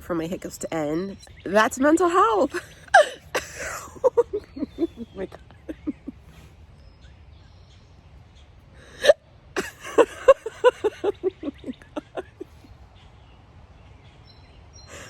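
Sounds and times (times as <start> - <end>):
short laughs: 2.6 - 6.5, 8.8 - 12.7.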